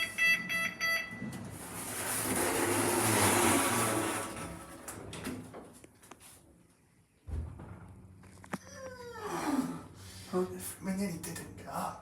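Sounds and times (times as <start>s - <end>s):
short electronic beeps: 0.0s - 1.2s.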